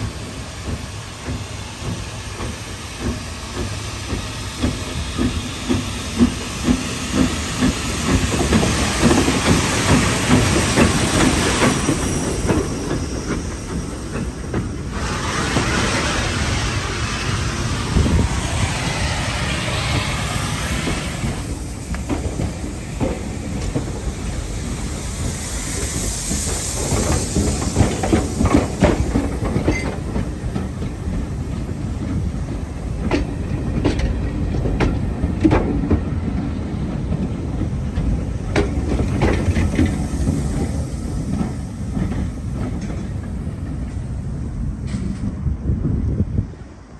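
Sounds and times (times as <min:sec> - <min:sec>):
train rumbling on rails: 0:00.0 - 0:46.9
wheels clicking over rail joints: 0:26.3 - 0:45.4.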